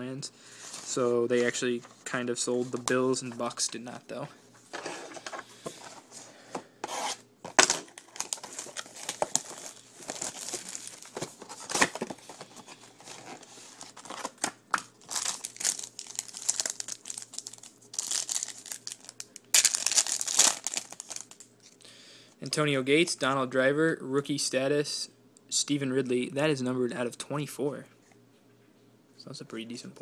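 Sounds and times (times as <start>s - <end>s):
wrapper tearing and crinkling: 7.6s - 12.4s, 13.0s - 21.8s.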